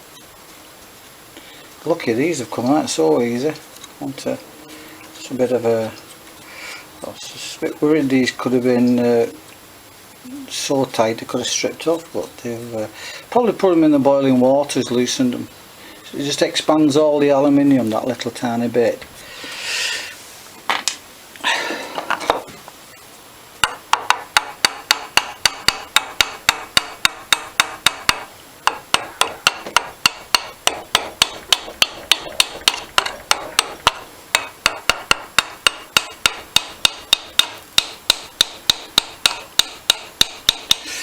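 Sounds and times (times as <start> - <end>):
hammer tapping on metal: 23.6 - 40.9.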